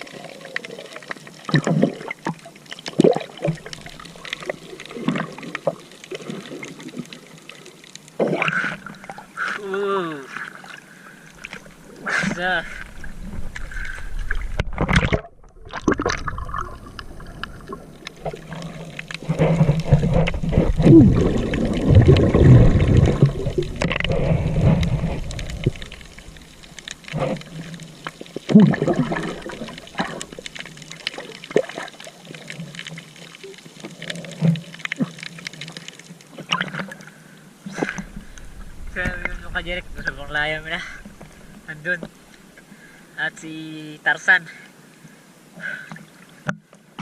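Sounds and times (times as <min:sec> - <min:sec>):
water sloshing and gurgling: 0:00.0 - 0:43.2
knocks and splashes: 0:01.4 - 0:07.0, 0:14.2 - 0:32.1.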